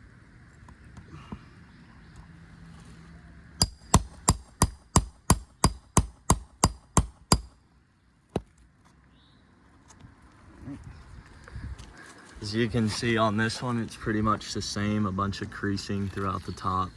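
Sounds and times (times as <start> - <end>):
hammer striking metal: 3.6 - 7.5.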